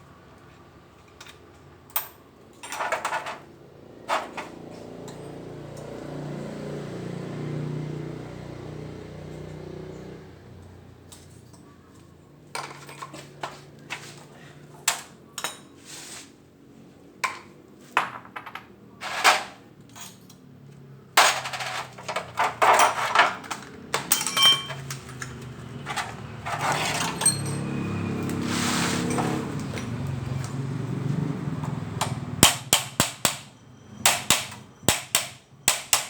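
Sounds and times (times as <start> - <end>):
metal tools clinking: 21.2 - 30.1.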